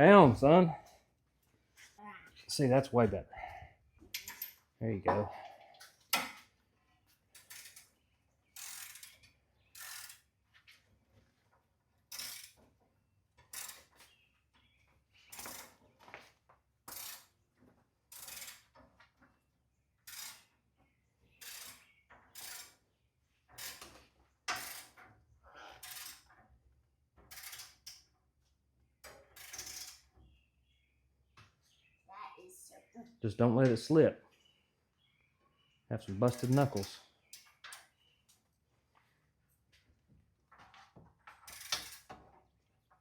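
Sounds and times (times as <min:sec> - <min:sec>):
ratchet wrench clicking: 0:08.6 - 0:09.2, 0:09.8 - 0:10.2, 0:27.3 - 0:28.0, 0:29.4 - 0:30.0, 0:41.5 - 0:42.1.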